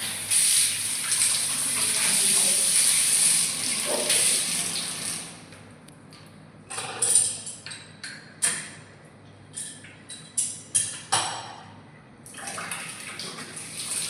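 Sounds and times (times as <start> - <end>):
water spraying from a tap: 0.0 - 5.4, 12.4 - 14.0.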